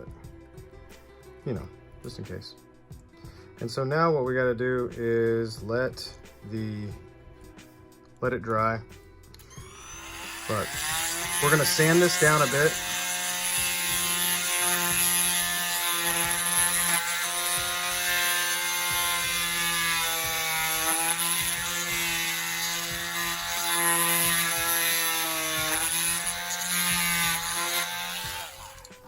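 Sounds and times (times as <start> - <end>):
rotary tool whining: 9.4 - 29.0.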